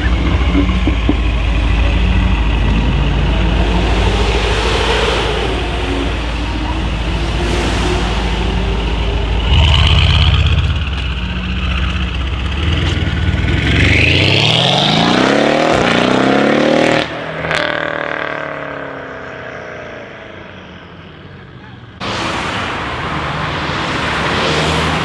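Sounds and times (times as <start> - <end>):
car engine accelerating: 0.0 - 25.0.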